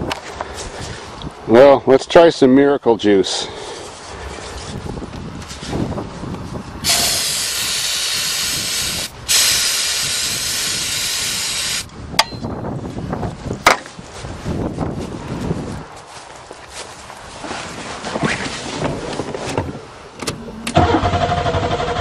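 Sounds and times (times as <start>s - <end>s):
aerosol spray hissing: 6.8s - 11.9s.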